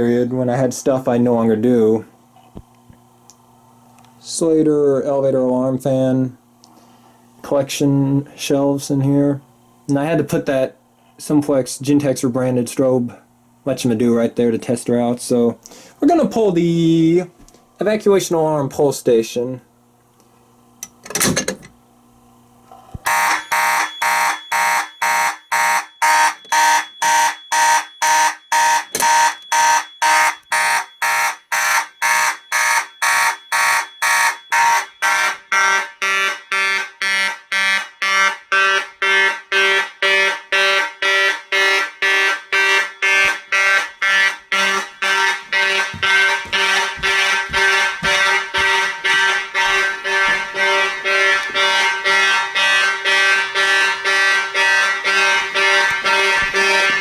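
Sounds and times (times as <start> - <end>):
fire alarm horns pulsing: 23.0 - 57.0
fire alarm pull station click: 26.1 - 35.2, 51.3 - 57.0.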